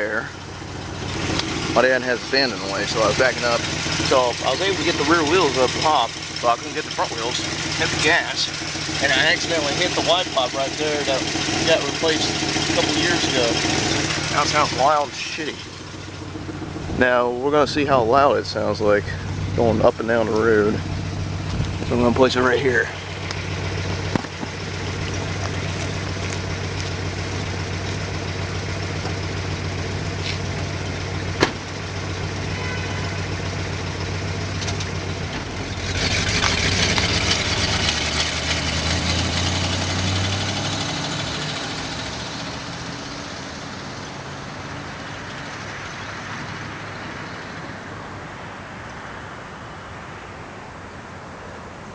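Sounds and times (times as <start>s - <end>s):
car engine idling with exhaust leak: 0.0s - 51.9s
sharp knock: 31.4s - 31.6s.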